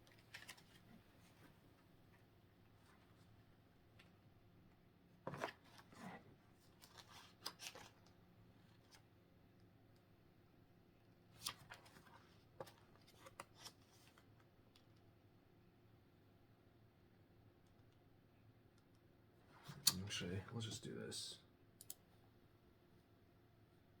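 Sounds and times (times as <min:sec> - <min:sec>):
paper rustling pages turned: 0:00.1 - 0:00.8, 0:05.3 - 0:06.1, 0:06.7 - 0:08.1, 0:11.4 - 0:14.3.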